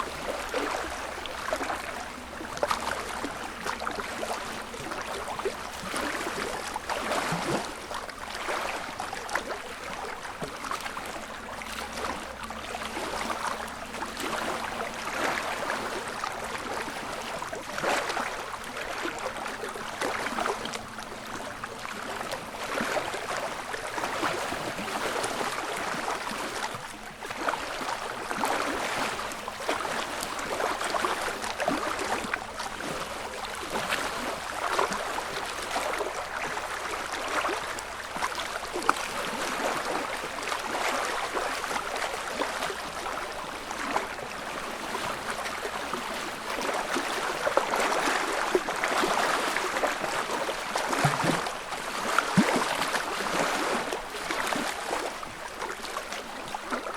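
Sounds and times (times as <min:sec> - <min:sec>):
lake ripples lapping at shore: 0:00.0 - 0:56.9.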